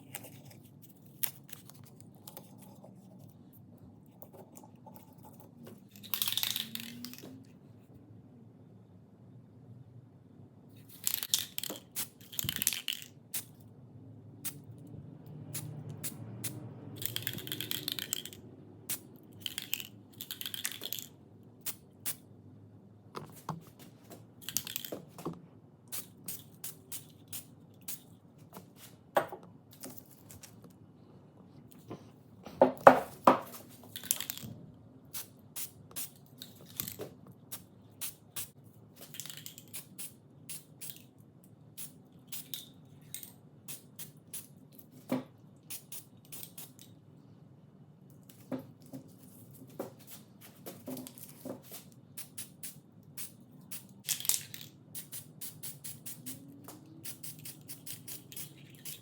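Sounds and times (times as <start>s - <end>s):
metal parts clicking and clinking: 5.8s - 7.3s, 11.0s - 13.1s, 17.0s - 18.4s, 19.3s - 21.2s, 24.4s - 25.0s, 33.9s - 34.5s, 36.4s - 37.0s, 39.0s - 39.8s, 54.0s - 54.8s.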